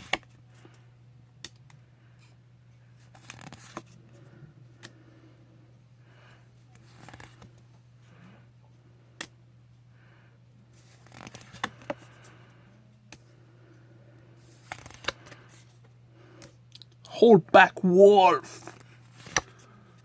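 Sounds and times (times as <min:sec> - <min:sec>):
cards rustling: 0:03.1 - 0:04.0, 0:10.8 - 0:12.2, 0:14.4 - 0:15.7, 0:18.5 - 0:19.7
steady low hum: 0:03.9 - 0:06.8, 0:11.8 - 0:20.0
breathing close to microphone: 0:11.4 - 0:16.6.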